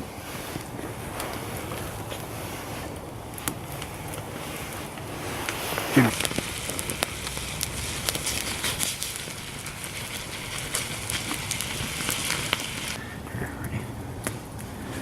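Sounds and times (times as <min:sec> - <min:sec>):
food sizzling in a pan: 0:06.0 - 0:13.0.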